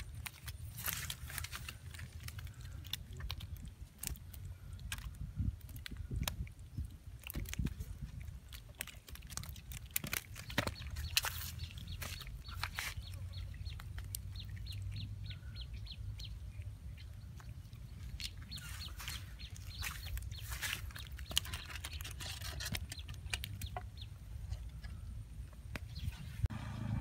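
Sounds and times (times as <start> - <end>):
steady low rumble: 24.0 - 27.0.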